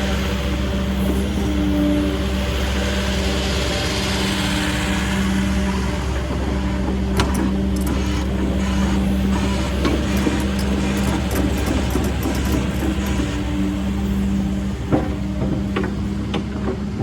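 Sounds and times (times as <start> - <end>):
excavator diesel engine running: 0.0 - 17.0
sharp clicks or knocks: 7.2 - 13.4.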